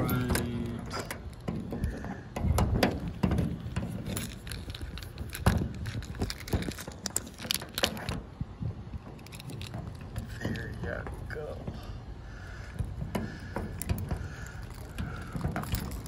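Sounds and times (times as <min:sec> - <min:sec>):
padlock and key metal clicks: 0:02.8 - 0:08.2, 0:13.7 - 0:16.0.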